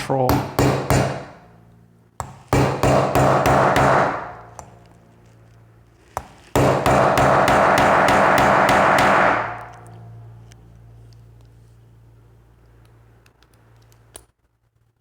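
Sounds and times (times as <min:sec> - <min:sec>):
low ringing spring hum: 0:00.0 - 0:06.2, 0:08.8 - 0:13.2.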